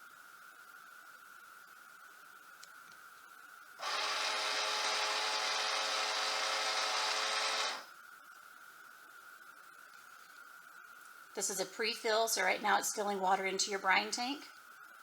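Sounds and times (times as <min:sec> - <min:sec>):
valve drive motor whirring: 0:03.8 - 0:07.9.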